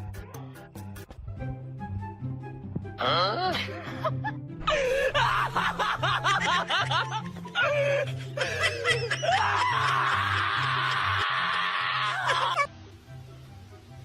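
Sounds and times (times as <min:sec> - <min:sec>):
background music with bass line: 0:00.0 - 0:09.4
laughter: 0:05.0 - 0:10.6
steady hissing noise: 0:12.6 - 0:14.0.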